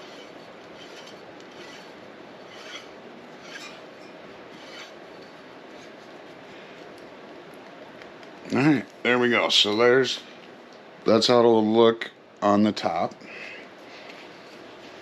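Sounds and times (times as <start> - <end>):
metal pipe threads scraping: 0.0 - 6.4
steady background hiss: 0.0 - 15.0.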